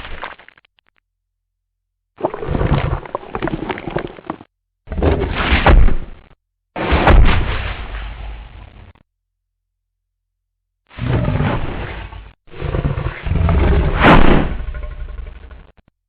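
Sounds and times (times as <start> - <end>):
deep rumble: 13.4 - 15.6.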